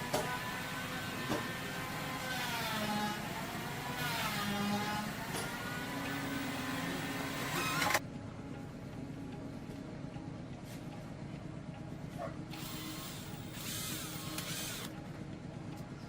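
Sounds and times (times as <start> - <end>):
machine motor whining: 0.0 - 8.0, 12.5 - 15.0.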